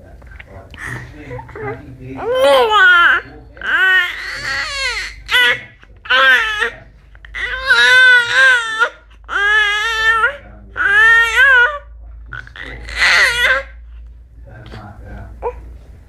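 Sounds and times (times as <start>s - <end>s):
baby screaming: 1.4s - 6.8s, 7.4s - 13.8s.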